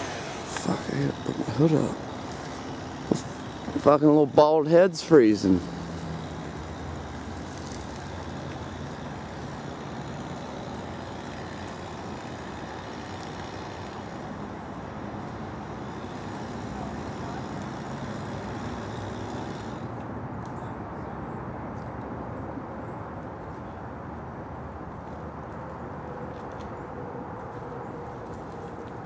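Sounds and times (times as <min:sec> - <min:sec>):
idling vehicle engine hum: 0:00.0 - 0:21.4
road traffic noise: 0:00.0 - 0:29.0.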